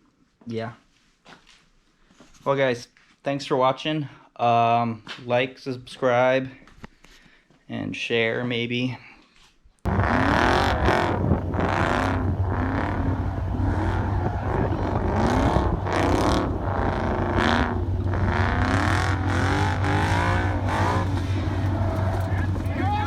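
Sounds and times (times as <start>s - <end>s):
car engine revving: 9.9s - 23.0s
low drone: 9.9s - 23.0s.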